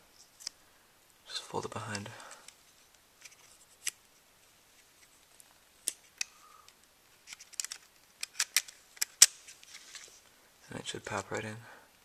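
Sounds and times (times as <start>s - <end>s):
plastic camera parts clicking: 7.2s - 9.5s.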